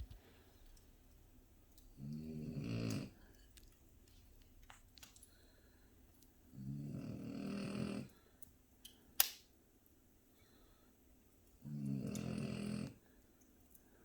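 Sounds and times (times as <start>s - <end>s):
dog snoring: 1.9s - 3.3s, 6.5s - 8.2s, 11.6s - 13.0s
sharp crack: 9.2s - 9.5s.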